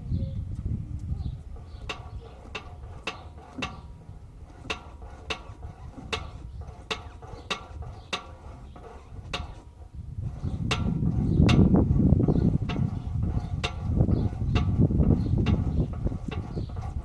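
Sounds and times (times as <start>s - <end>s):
low steady rumble: 0.0s - 17.0s.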